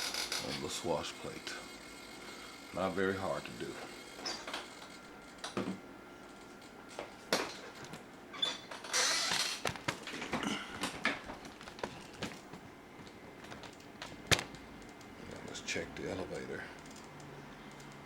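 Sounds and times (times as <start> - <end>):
small clicks knocks and creaks: 4.2 - 15.1, 16.8 - 18.0.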